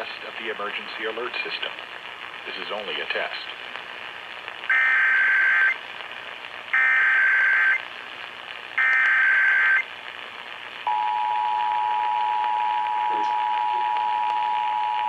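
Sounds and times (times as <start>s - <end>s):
radio reception hiss: 0.0s - 15.0s
digital data bursts: 4.7s - 5.8s, 6.7s - 7.8s.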